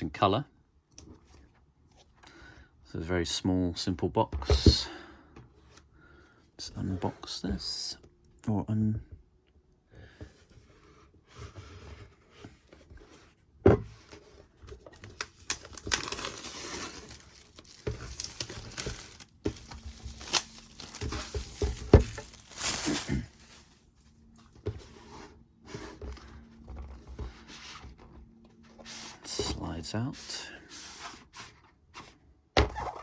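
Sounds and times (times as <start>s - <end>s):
paper tearing and crinkling: 15.1s - 23.8s.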